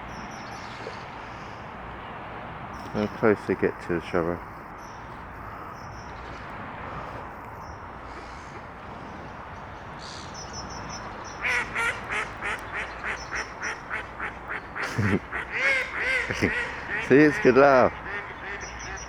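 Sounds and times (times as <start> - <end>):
gull laughing call: 3.0 - 9.4, 10.9 - 19.0.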